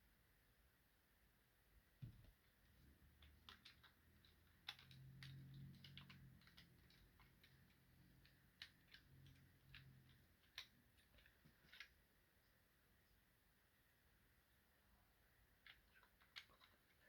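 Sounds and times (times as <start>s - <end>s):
plastic parts clicking: 3.0s - 12.0s.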